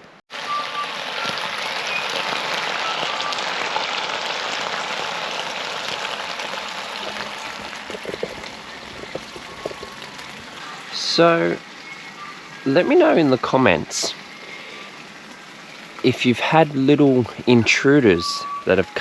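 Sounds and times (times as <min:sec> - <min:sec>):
food sizzling in a frying pan: 0:00.3 - 0:13.0.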